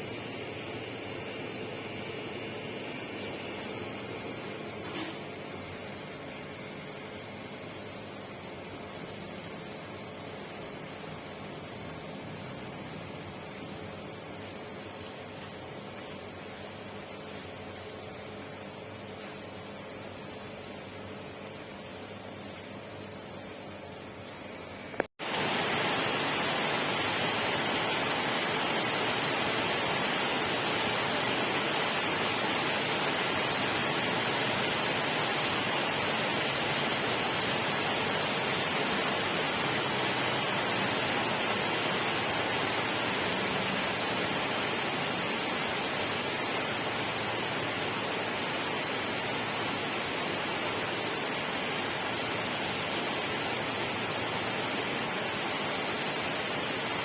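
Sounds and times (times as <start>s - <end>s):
rushing water: 25.2s - 57.0s.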